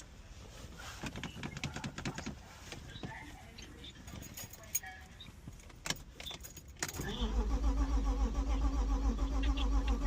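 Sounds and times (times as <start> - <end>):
keys clicking in ignition: 5.6 - 7.6
starter cranking engine: 6.9 - 10.0.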